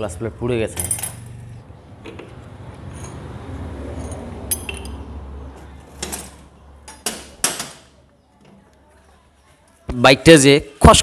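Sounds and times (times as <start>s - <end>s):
metal engine parts clinking: 0.6s - 7.9s.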